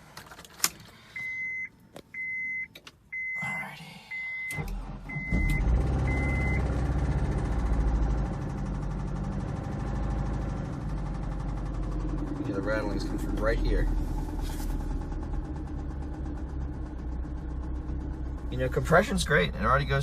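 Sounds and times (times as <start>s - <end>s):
dashboard warning chime beeping: 1.1s - 6.7s
car engine cranking and idling: 4.1s - 20.0s.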